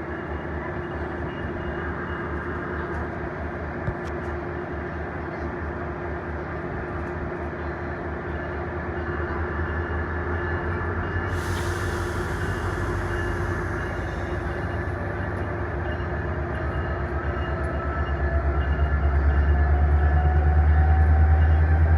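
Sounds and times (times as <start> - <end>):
diesel train engine rumbling: 0.0 - 21.9
hiss: 11.3 - 14.5.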